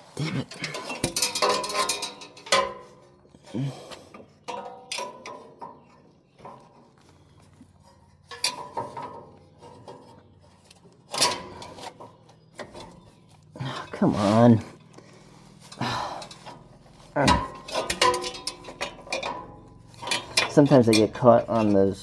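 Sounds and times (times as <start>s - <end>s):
metal parts clanking: 0.1s - 6.8s, 8.2s - 22.0s
sharp metal knocks: 17.2s - 21.8s.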